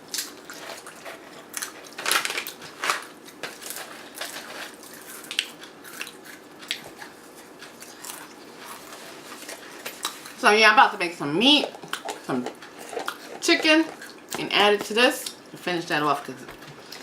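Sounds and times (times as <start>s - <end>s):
person chewing crunchy snack: 0.0s - 10.4s, 11.7s - 14.4s.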